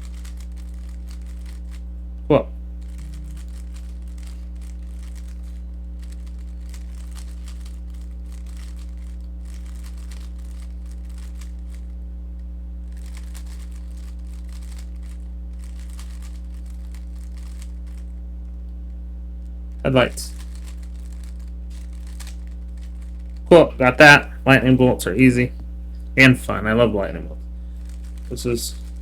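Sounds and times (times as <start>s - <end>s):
puzzle cube plastic clicking: 0.0s - 1.8s, 2.8s - 11.8s, 12.9s - 18.1s
low electrical hum: 0.0s - 29.0s.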